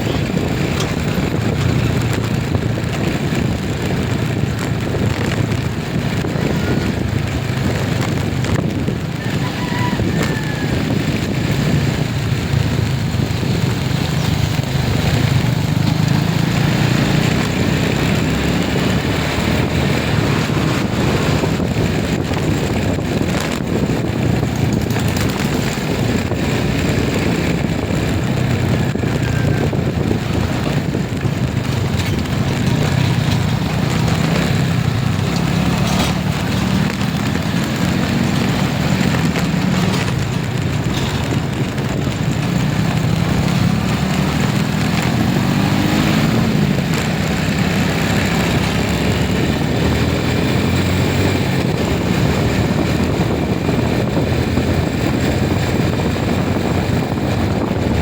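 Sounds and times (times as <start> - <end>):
road and wind noise: 0.0 - 58.0
vehicle engine hum: 0.0 - 58.0.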